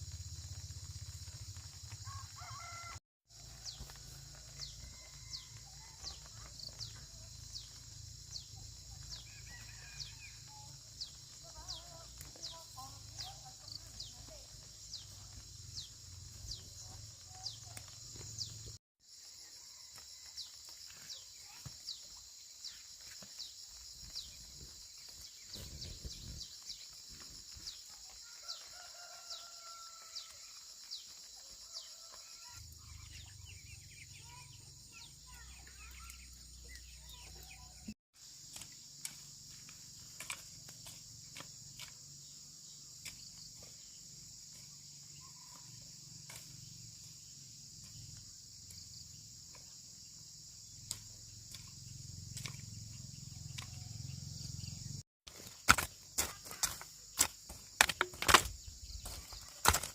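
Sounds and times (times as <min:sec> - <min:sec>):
insects chorus: 0:00.0 - 0:59.9
rooster crowing faintly: 0:02.0 - 0:06.1, 0:28.2 - 0:30.5.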